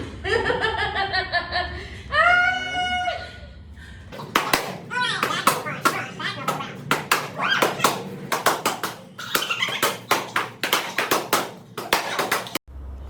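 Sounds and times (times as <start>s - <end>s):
strikes and kicks smacking: 4.2s - 12.6s.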